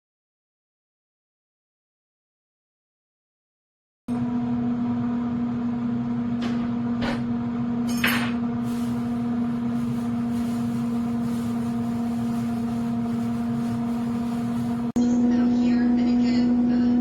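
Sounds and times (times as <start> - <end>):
air fryer humming: 4.1 - 17.0.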